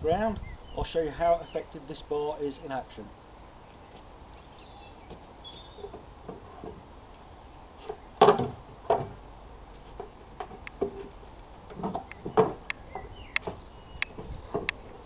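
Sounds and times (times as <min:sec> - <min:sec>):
wooden knocks and cracks: 0:07.9 - 0:09.2, 0:10.0 - 0:14.8.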